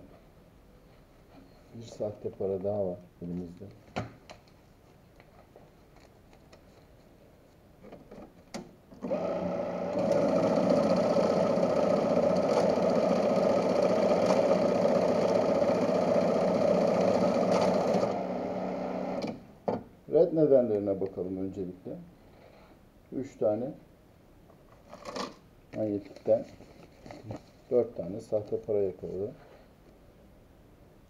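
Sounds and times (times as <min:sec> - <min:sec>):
banknote counting machine whirring: 0:09.0 - 0:19.2.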